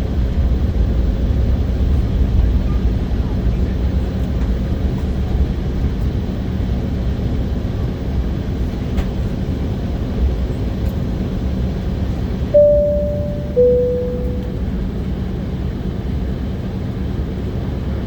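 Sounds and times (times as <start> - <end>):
two-note cabin chime: 12.6 - 14.7.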